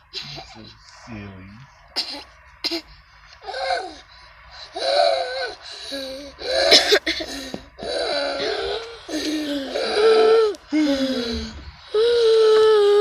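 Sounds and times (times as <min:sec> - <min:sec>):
girl gasping for breath: 0:07.1 - 0:10.1, 0:10.7 - 0:12.2.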